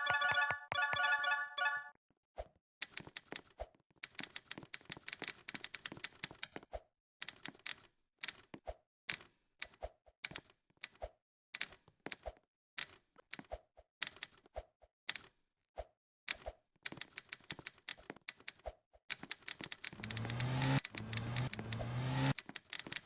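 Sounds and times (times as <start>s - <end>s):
typewriter keys striking: 19.1s - 21.8s.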